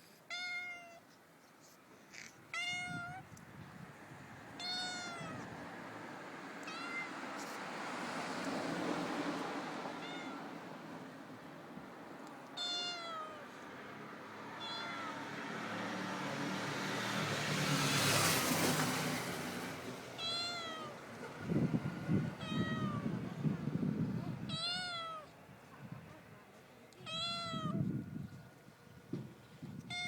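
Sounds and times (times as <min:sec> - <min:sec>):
cat meowing: 0:00.3 - 0:01.0, 0:02.2 - 0:03.4, 0:04.6 - 0:05.6, 0:06.6 - 0:07.2, 0:10.0 - 0:10.6, 0:12.5 - 0:13.6, 0:14.6 - 0:15.4, 0:20.2 - 0:21.0, 0:22.3 - 0:23.2, 0:24.4 - 0:25.3, 0:27.0 - 0:28.3, 0:29.8 - 0:30.0.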